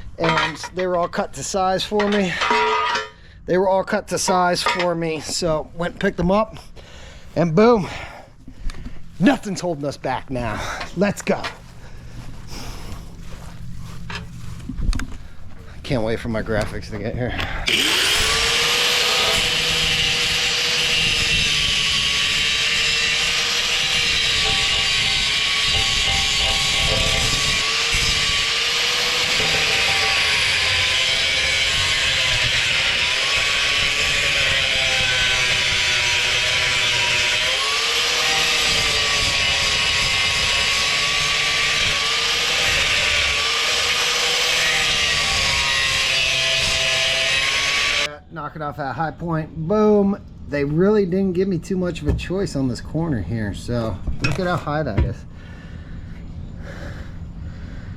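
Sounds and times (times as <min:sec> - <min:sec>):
power tool grinding metal: 0:00.2 - 0:03.2, 0:04.2 - 0:05.0, 0:17.6 - 0:48.1.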